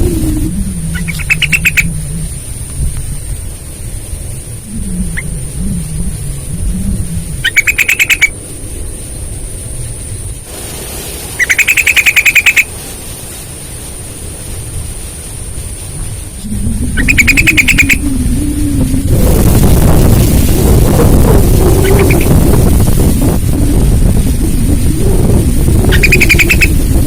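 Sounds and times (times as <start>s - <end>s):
bulbul rattling song: 0.0s - 2.4s, 4.6s - 8.4s, 11.3s - 12.7s, 16.6s - 18.4s, 20.9s - 23.0s, 25.7s - 27.0s
low wavering hum: 0.0s - 27.0s.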